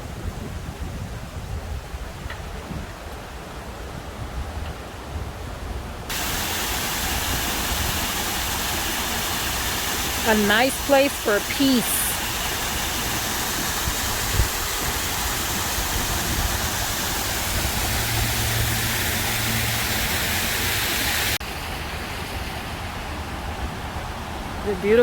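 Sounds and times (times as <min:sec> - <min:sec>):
fountain water cascading: 0:06.1 - 0:25.0.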